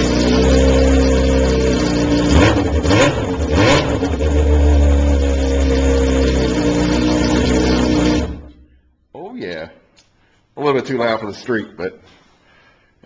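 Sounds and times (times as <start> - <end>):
motorcycle engine revving and idling: 0.0 - 8.6.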